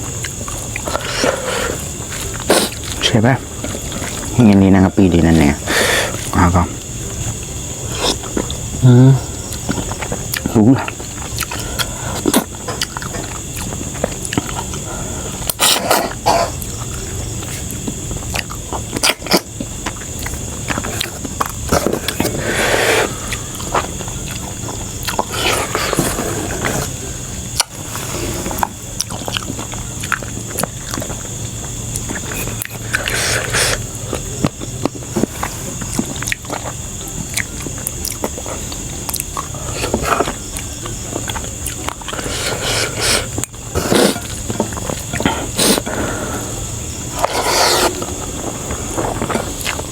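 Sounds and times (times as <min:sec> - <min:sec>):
chewing and biting food: 0:00.0 - 0:04.7, 0:06.1 - 0:08.8, 0:09.4 - 0:49.9
noisy mouth noise bursts: 0:00.8 - 0:03.0, 0:32.2 - 0:33.9, 0:42.1 - 0:44.4, 0:45.0 - 0:48.2.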